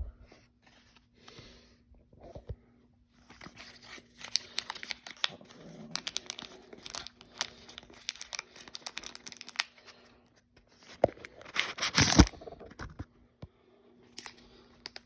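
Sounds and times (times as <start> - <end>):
packaging crinkling: 3.2 - 10.0, 10.8 - 12.6, 14.2 - 15.0.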